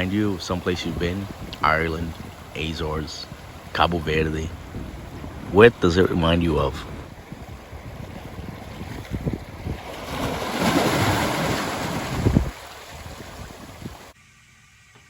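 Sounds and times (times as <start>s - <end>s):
ocean surf breaking: 0.0s - 14.1s
wind buffeting microphone: 0.0s - 14.1s.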